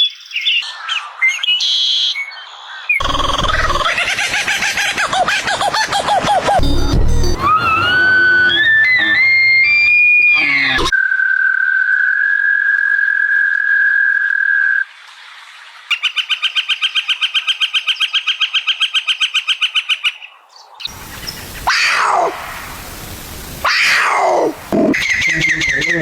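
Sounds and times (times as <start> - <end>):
fast animal trill: 3.0 - 6.6, 7.4 - 10.9
high animal whistle: 7.3 - 13.9
animal calls sliding down in pitch: 7.4 - 10.9, 21.6 - 22.8, 23.6 - 26.0.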